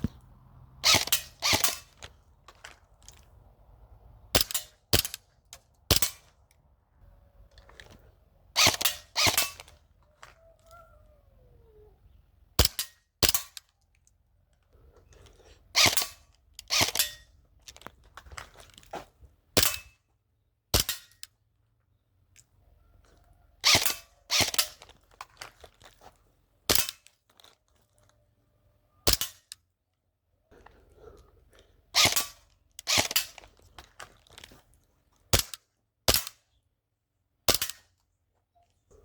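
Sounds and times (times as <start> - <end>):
airsoft guns firing single shots: 35.4 - 36.4, 37.5 - 37.8.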